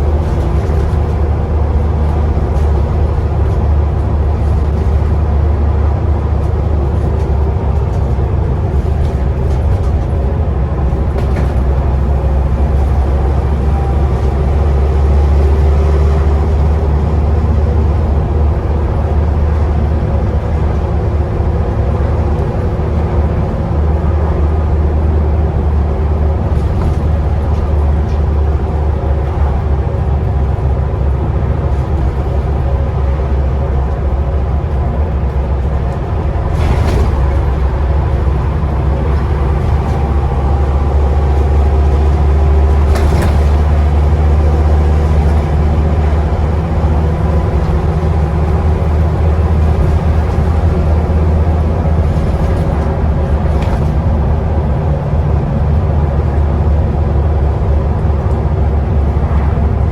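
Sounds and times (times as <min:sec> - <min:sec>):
bus diesel engine drone: 0:00.0 - 0:59.9.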